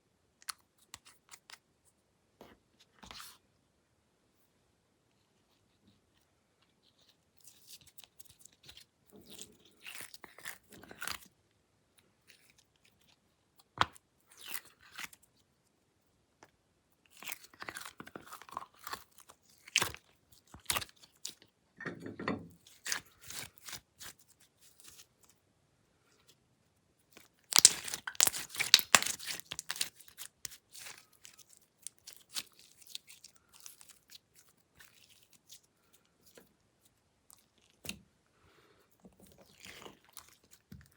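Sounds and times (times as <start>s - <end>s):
slime squishing and crackling: 27.1s - 36.4s.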